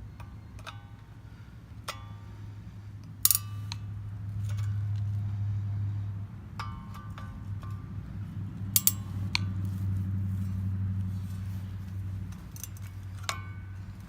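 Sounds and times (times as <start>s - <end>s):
steady low hum: 0.0s - 14.0s
tools clinking on machete: 3.3s - 3.8s, 8.8s - 9.5s, 12.3s - 13.9s.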